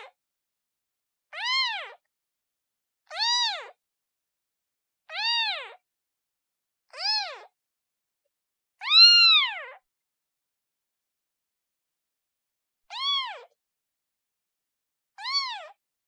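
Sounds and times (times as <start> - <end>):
kitten meowing: 1.4 - 2.0, 3.1 - 3.8, 5.1 - 5.8, 6.9 - 7.5, 8.8 - 9.8, 12.9 - 13.5, 15.2 - 15.8.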